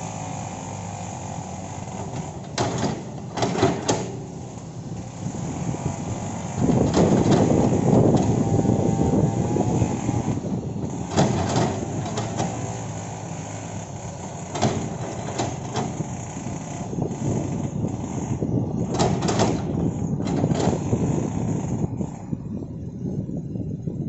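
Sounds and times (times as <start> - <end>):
excavator engine and hydraulics: 0.0 - 24.0.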